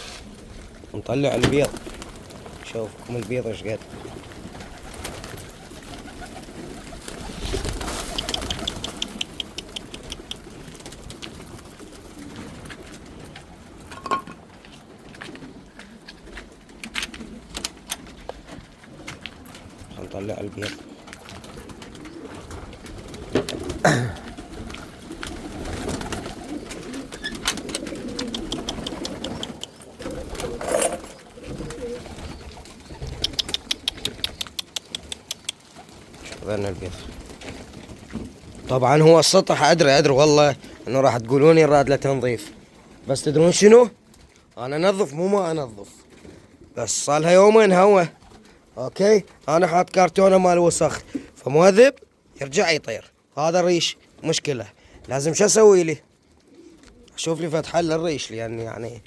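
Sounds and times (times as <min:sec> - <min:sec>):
pigeons cooing: 0:00.0 - 0:38.2, 0:39.6 - 0:44.9, 0:56.0 - 0:58.6
quick run of ticks: 0:04.6 - 0:12.0, 0:24.7 - 0:30.6, 0:31.6 - 0:36.4
sharp clicks: 0:07.5 - 0:11.3, 0:27.3 - 0:30.6, 0:33.0 - 0:35.6.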